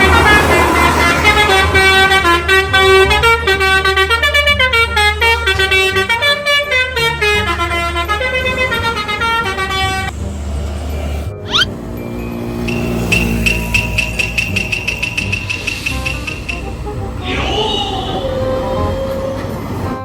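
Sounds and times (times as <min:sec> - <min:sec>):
multi-tone bus horn melody: 0:00.0 - 0:20.0
low engine hum: 0:05.2 - 0:20.0.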